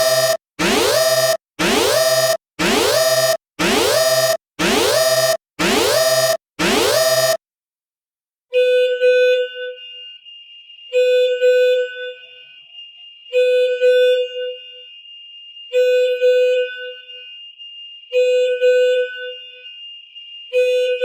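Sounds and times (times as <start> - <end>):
electronic warning alarm blasts: 0.0 - 7.4.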